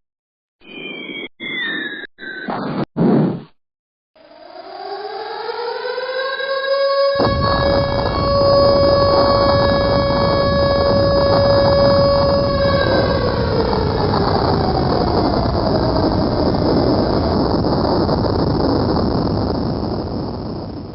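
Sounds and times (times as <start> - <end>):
air-raid siren wailing: 4.2 - 17.4
heavy rumble: 7.2 - 20.9.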